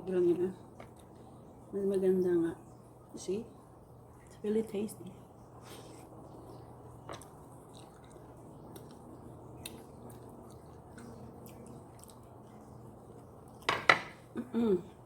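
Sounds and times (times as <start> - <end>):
person chewing: 7.1 - 13.7.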